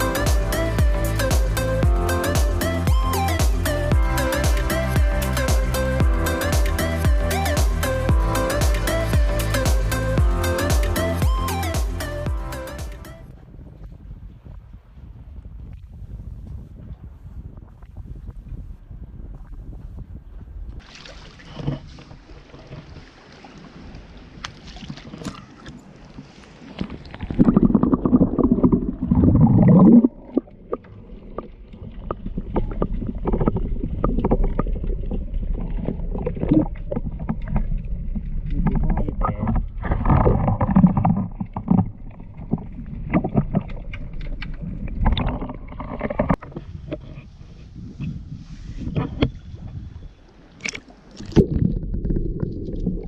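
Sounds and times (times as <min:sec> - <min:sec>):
wind gusting against microphone: 0:13.3 - 0:20.9, 0:37.9 - 0:50.3.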